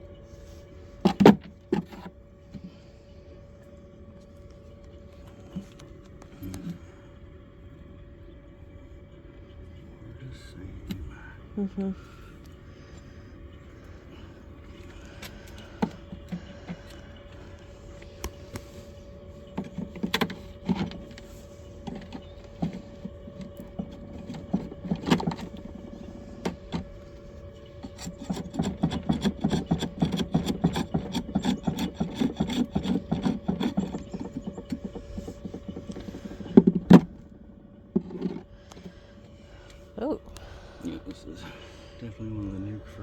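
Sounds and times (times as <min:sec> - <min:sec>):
faint steady hum: 0:00.0 - 0:43.0
wooden frames being scraped: 0:01.0 - 0:02.1, 0:14.8 - 0:39.0.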